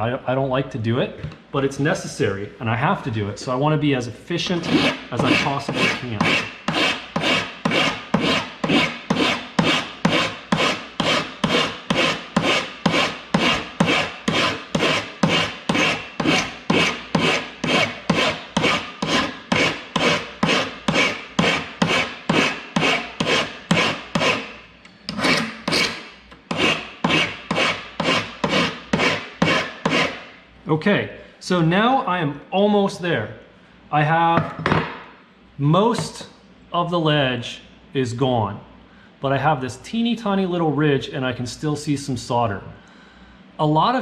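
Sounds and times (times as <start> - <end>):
hand file rasping on metal: 4.5 - 30.2.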